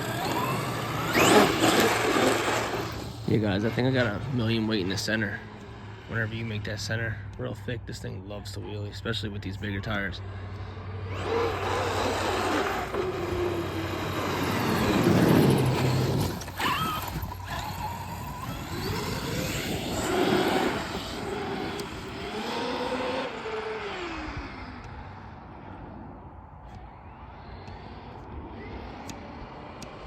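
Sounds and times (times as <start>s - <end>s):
rc truck electric motor whine: 0.0s - 6.8s, 9.9s - 26.0s
tire noise: 0.0s - 30.0s.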